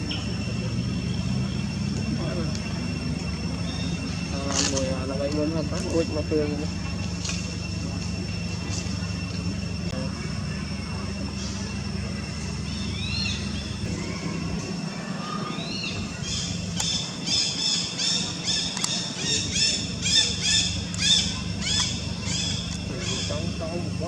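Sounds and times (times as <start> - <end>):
steady low hum: 0.0 - 24.0
monkeys shrieking: 12.6 - 23.9.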